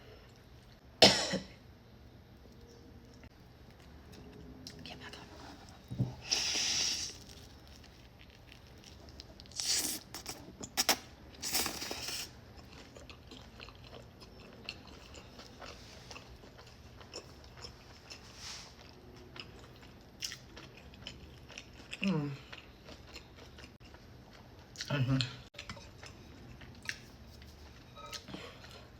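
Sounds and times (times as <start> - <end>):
chewing with wet mouth clicks: 12.5 - 18.2, 18.8 - 24.9, 25.6 - 28.8.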